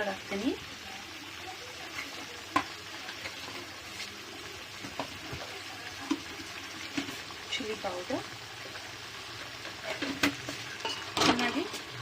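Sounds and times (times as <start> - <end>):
masala sizzling in hot oil: 0.0 - 12.0.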